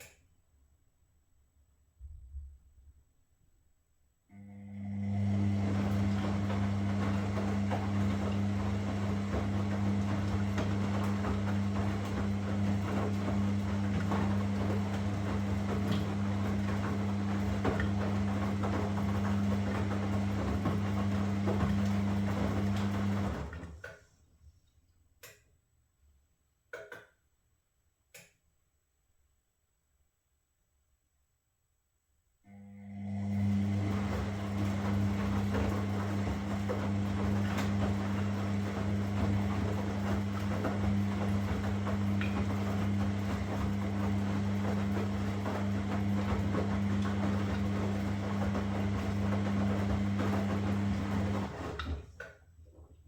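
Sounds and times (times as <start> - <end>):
washing machine running: 4.4 - 24.0, 32.5 - 53.0.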